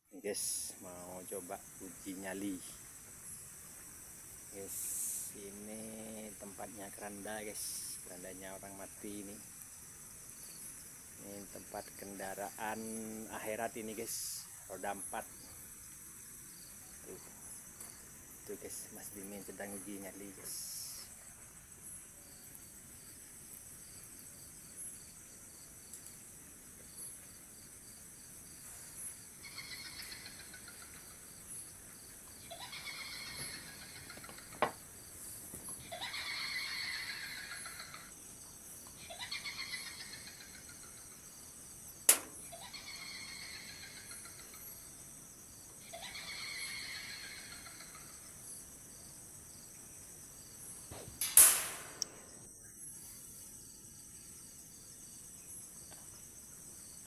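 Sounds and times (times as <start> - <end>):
crickets chirping: 0.0 - 57.0
loud chittering call: 0.2 - 25.6, 26.9 - 49.7, 50.6 - 53.2
whinny-like descending call: 35.8 - 38.0, 45.9 - 47.8
sharp click: 42.1 - 42.4, 50.9 - 52.3.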